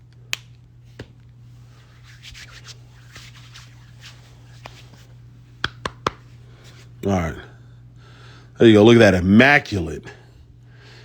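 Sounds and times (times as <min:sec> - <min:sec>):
steady low hum: 0:00.0 - 0:11.0
hands rubbing lotion: 0:01.0 - 0:06.9.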